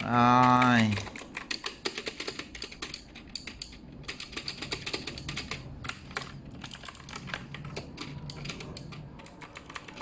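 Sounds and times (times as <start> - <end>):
mechanical keyboard clicks: 0.0 - 10.0.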